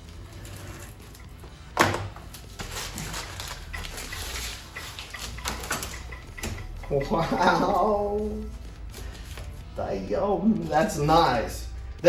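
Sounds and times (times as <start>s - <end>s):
packaging rustling and clicking: 2.2s - 7.0s.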